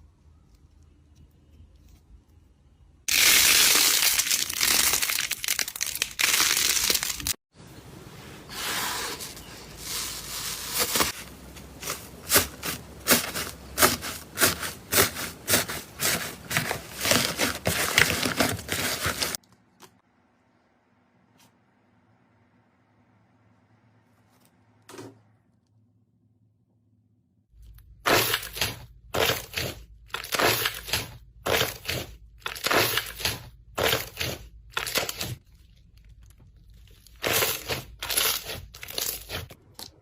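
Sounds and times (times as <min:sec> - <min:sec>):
slime crinkling crunch: 0:03.1 - 0:07.4, 0:10.7 - 0:19.4, 0:28.1 - 0:40.0.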